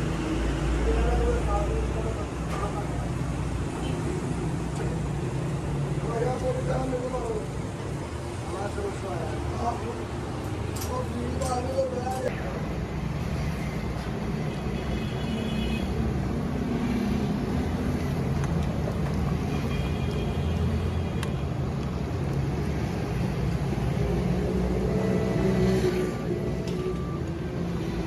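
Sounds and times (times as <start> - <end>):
passing traffic rumble: 15.8 - 28.0.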